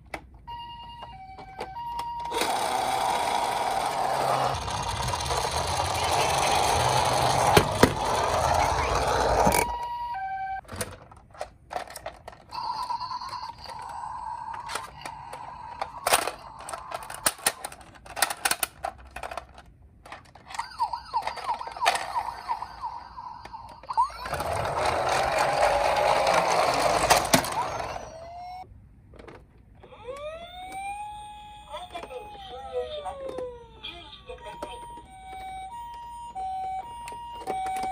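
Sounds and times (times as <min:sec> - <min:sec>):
toy electronic sirens: 0:00.4 - 0:10.6, 0:12.5 - 0:17.7, 0:20.5 - 0:28.6, 0:29.8 - 0:37.9
toy cars clicking and knocking: 0:01.7 - 0:09.8, 0:10.7 - 0:22.6, 0:23.3 - 0:28.1, 0:36.8 - 0:37.9.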